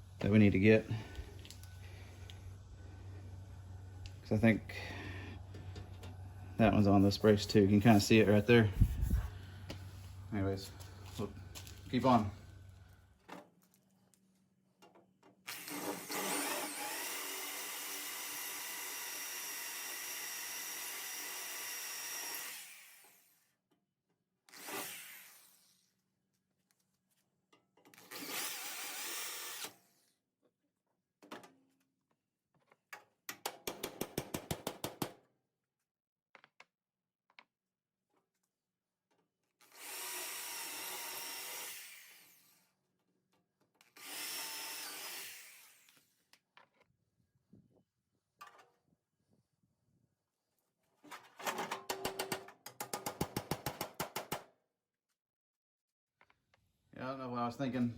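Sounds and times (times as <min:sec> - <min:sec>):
power drill drilling metal: 0:15.5 - 0:23.4, 0:24.5 - 0:25.7, 0:28.0 - 0:30.0, 0:39.6 - 0:42.6, 0:44.0 - 0:46.1.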